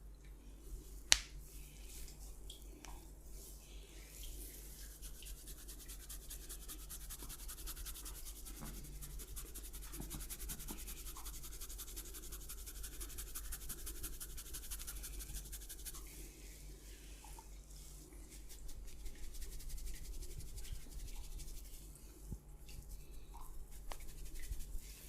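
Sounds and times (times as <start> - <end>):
hands rubbing hair and scalp: 3.4 - 16.6, 17.8 - 21.9, 22.7 - 25.0.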